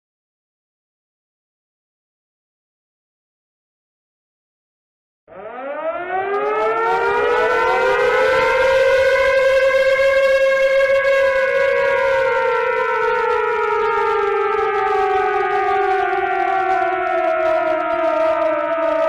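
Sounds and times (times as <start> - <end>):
civil defence siren wailing: 5.3 - 19.0.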